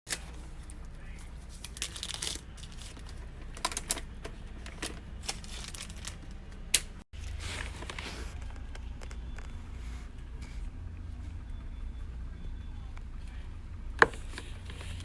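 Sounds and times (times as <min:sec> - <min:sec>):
packaging rustling: 0:01.5 - 0:06.4, 0:07.2 - 0:08.9, 0:14.0 - 0:15.0.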